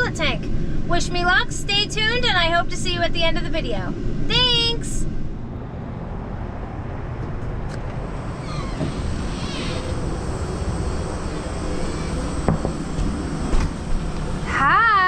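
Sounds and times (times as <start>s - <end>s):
vehicle cabin rumble: 5.4s - 15.0s.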